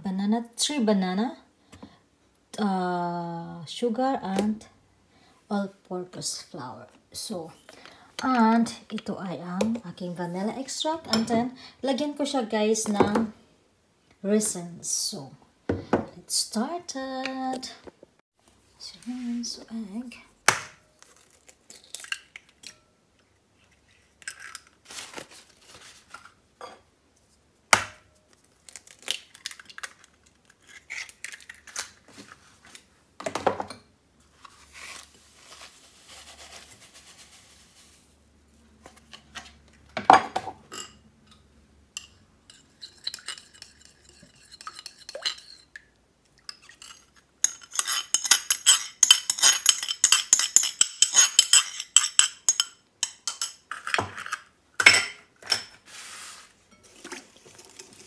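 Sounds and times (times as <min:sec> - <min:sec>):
utensils clinking in mixing bowl: 0:42.0 - 0:45.8, 0:46.5 - 0:55.8.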